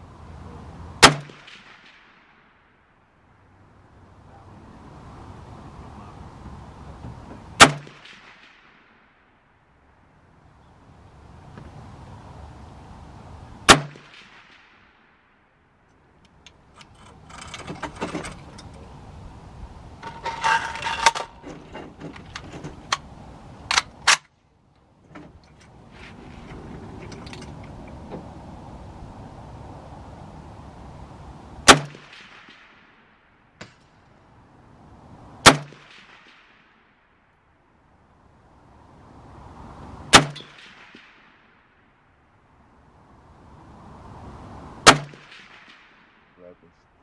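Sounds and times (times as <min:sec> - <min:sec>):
rifle shots: 0:01.0 - 0:02.5, 0:07.6 - 0:09.0, 0:13.6 - 0:15.0, 0:31.6 - 0:33.8, 0:35.4 - 0:36.6, 0:40.1 - 0:41.3, 0:44.8 - 0:46.3.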